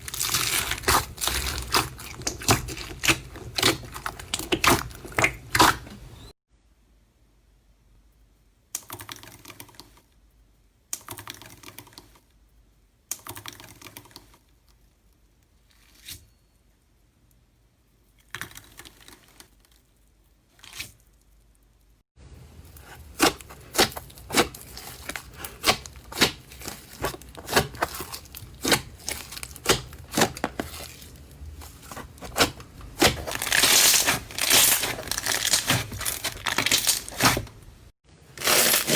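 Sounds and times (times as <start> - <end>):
slime squished by hand: 0.0 - 6.3, 22.8 - 37.7.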